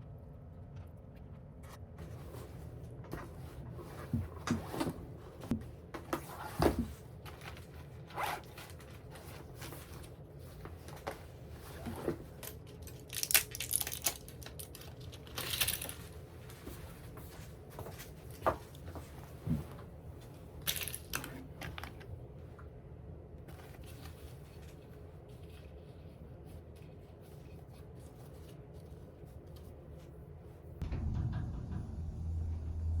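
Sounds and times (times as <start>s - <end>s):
handling knocks and rustles: 0.7s - 22.1s.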